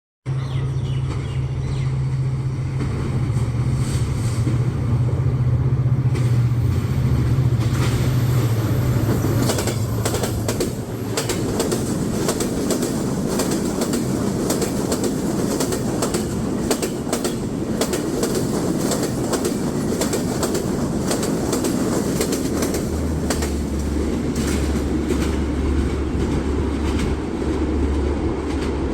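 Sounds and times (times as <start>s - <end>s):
diesel locomotive engine droning: 0.3s - 28.9s
steady train rumble: 0.3s - 28.9s
train wheels clacking over rail joints: 6.0s - 28.9s.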